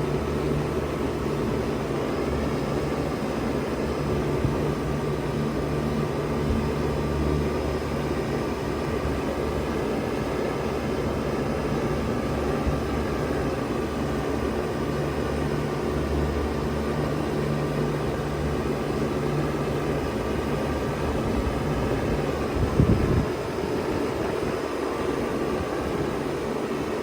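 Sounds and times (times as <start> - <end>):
compressor hum: 0.0 - 27.0
fan air rushing: 0.0 - 27.0.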